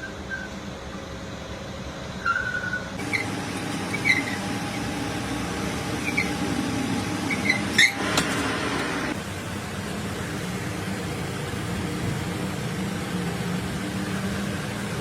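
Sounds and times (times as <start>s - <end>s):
short high squeaks: 2.2s - 5.1s, 6.0s - 6.5s, 7.1s - 8.4s
lathe running with whine: 3.0s - 15.0s.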